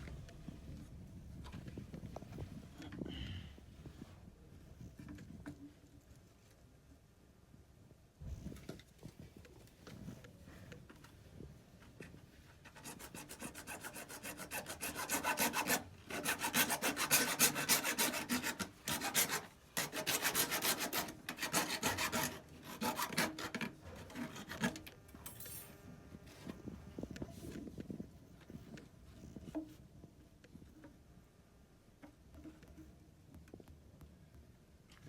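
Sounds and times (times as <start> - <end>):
hand tool rasping plastic pipe: 12.6 - 24.9.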